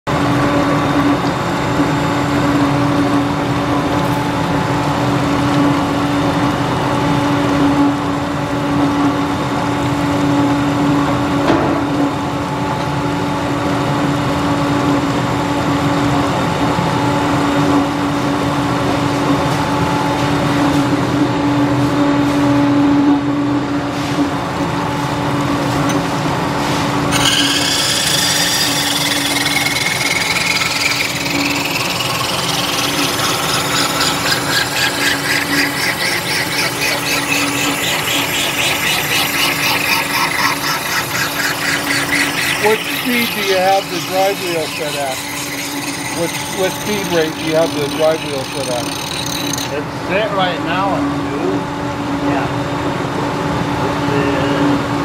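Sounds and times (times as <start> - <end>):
grinder machine hum: 25.4 - 50.1.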